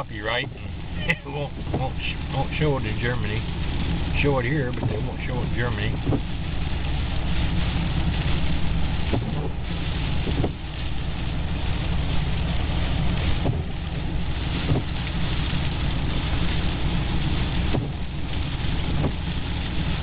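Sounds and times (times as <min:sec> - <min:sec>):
heavy storm surf: 0:00.0 - 0:06.4.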